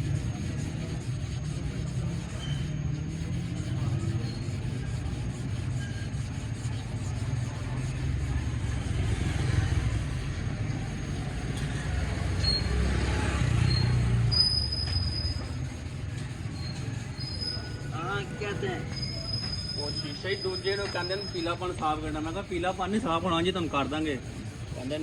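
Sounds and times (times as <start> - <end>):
low mechanical rumble: 0.0 - 18.5
high squeaks: 2.2 - 2.8, 12.3 - 18.0, 18.8 - 22.4
sharp high squeal: 2.3 - 2.9, 3.8 - 4.9, 5.5 - 6.2, 12.2 - 22.3.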